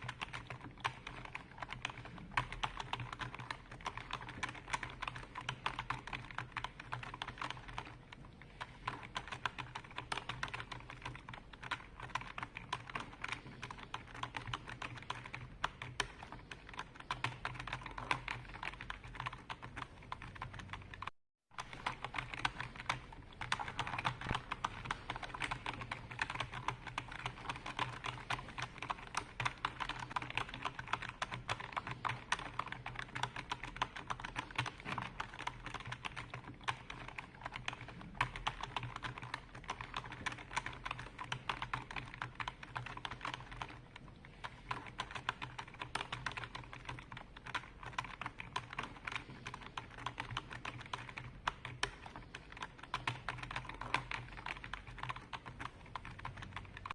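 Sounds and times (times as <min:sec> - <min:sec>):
typing on computer keyboard: 0:00.0 - 0:56.9.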